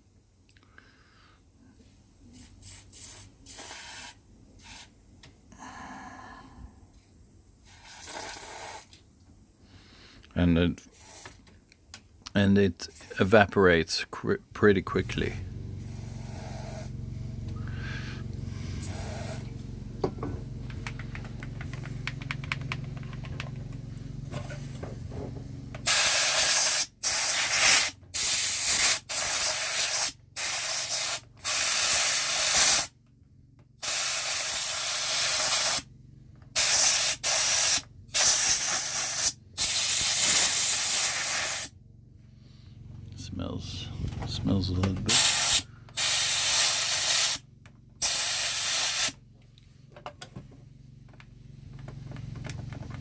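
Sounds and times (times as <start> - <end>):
aerosol spray hissing: 2.4 - 4.9, 7.6 - 8.9, 10.9 - 11.4, 15.8 - 17.0, 17.7 - 19.6, 25.8 - 32.9, 33.8 - 35.9, 36.6 - 41.7, 45.1 - 47.4, 48.0 - 49.2
low hum: 12.2 - 25.8, 41.8 - 45.9.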